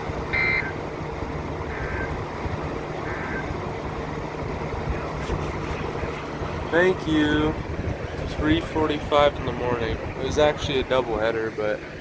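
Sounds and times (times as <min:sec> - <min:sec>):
radio hiss and hum: 0:04.9 - 0:12.0.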